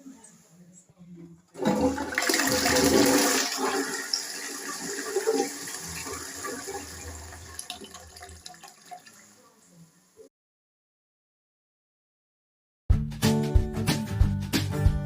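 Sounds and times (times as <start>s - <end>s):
toilet flushing: 1.6s - 9.6s.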